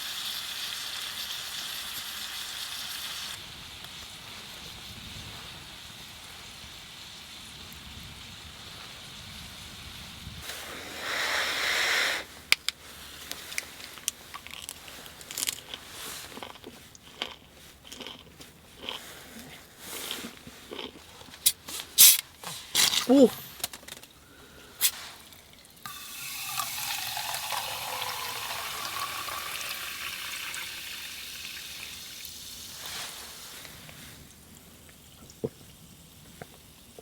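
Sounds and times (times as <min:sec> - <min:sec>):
steady hiss: 0:00.0 - 0:13.6, 0:24.2 - 0:37.0
food being crunched: 0:13.6 - 0:19.0.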